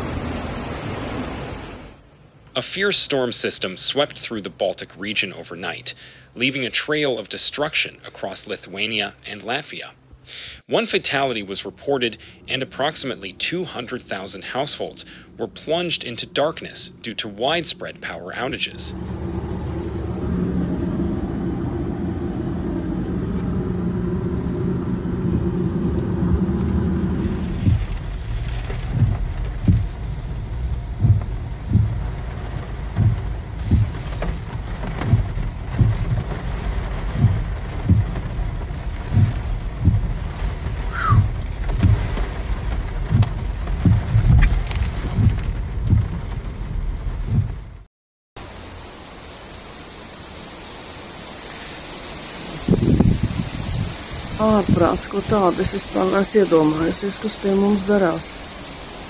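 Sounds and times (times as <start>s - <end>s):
rushing noise with low thumps: 0.0s - 2.3s, 17.8s - 57.7s
rain: 0.0s - 59.0s
vehicle engine running: 18.3s - 47.8s.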